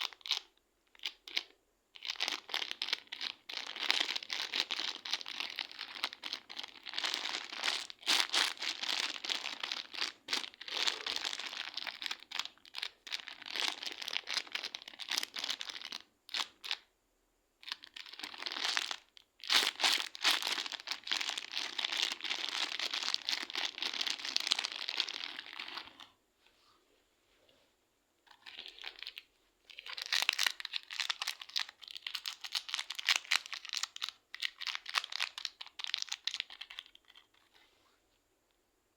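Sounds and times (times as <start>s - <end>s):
slime squeezed by hand crackling: 3.8s - 15.6s.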